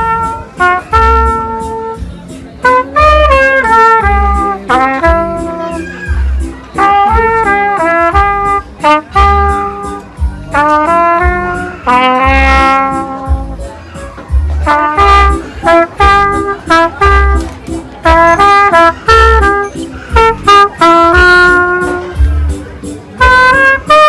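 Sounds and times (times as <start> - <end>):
jazzy brass music: 0.0 - 24.0.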